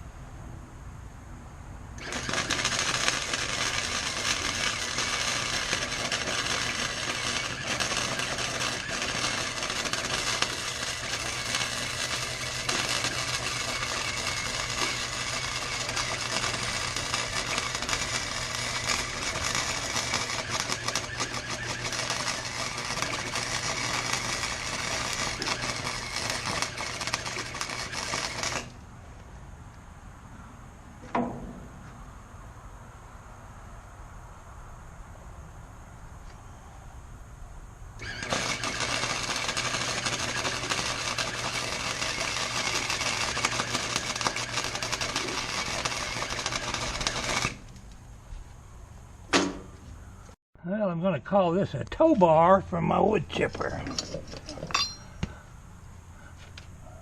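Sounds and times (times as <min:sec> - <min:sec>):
welding arc crackling: 0:02.0 - 0:28.8, 0:38.0 - 0:48.1
welder hum: 0:02.0 - 0:28.9, 0:38.0 - 0:48.4.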